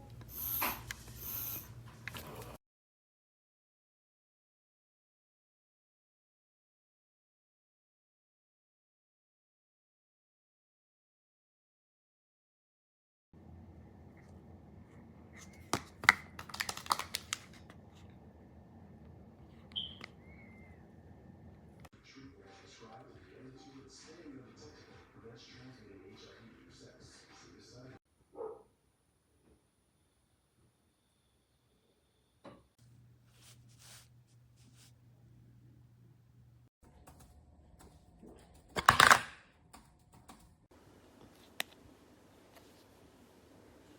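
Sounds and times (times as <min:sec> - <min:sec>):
faint room hum: 0:13.4 - 0:43.9
brief squeak: 0:19.8 - 0:20.6.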